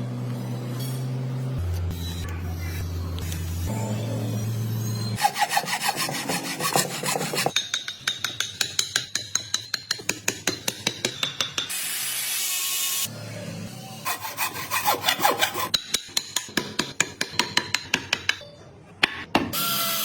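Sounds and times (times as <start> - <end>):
rasp on wood: 5.2 - 7.6, 14.1 - 15.8.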